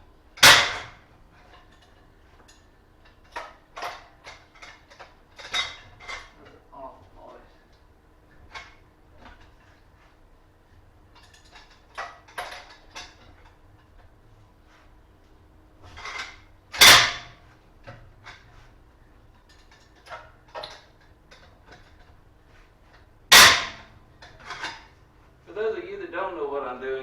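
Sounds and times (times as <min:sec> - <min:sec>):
metal clanks and knocks: 0:00.3 - 0:07.8, 0:08.4 - 0:10.2, 0:11.1 - 0:14.2, 0:15.8 - 0:25.0.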